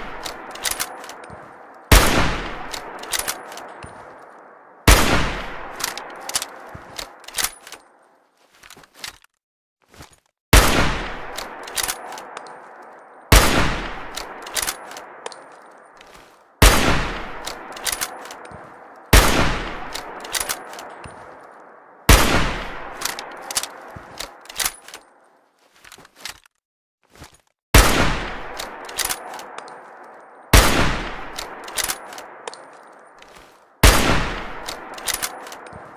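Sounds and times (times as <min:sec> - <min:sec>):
rifle shots echoing: 0:00.0 - 0:07.6, 0:10.6 - 0:24.8, 0:27.8 - 0:35.9
small metallic clicks: 0:00.2 - 0:01.8, 0:02.6 - 0:04.5, 0:05.8 - 0:09.4, 0:11.3 - 0:12.9, 0:14.1 - 0:16.4, 0:17.4 - 0:19.1, 0:19.8 - 0:21.7, 0:23.0 - 0:26.6, 0:28.5 - 0:30.3, 0:31.3 - 0:33.6, 0:34.6 - 0:35.9.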